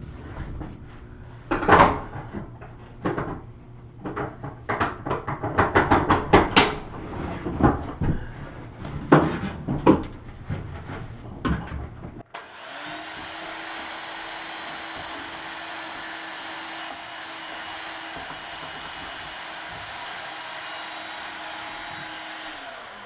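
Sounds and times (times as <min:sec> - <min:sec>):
whirring machine: 0:12.3 - 0:23.0
sharp knocks: 0:16.9 - 0:20.3.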